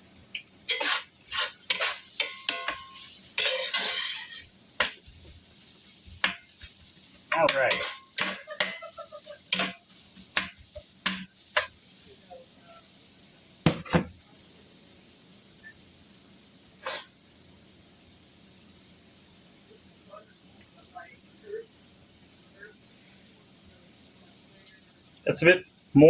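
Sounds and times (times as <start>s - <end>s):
food sizzling in a pan: 0.0s - 26.0s
kitchen utensils clicking and knocking: 0.4s - 5.1s, 6.2s - 11.8s.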